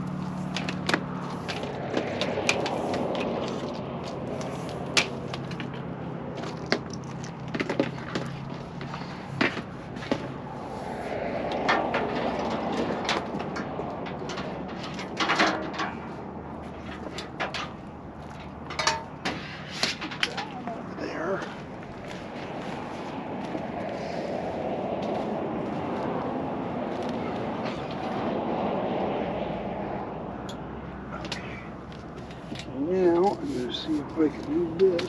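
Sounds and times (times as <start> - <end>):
hardware clicks and clatter: 0.0 - 10.4, 11.4 - 20.8.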